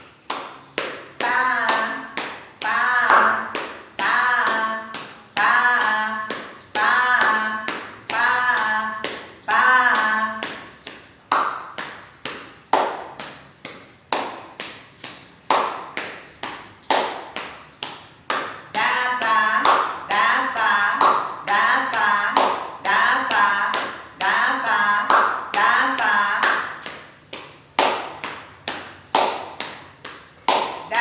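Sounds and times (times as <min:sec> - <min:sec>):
woman chanting held syllables: 0:01.2 - 0:10.7, 0:18.7 - 0:26.8.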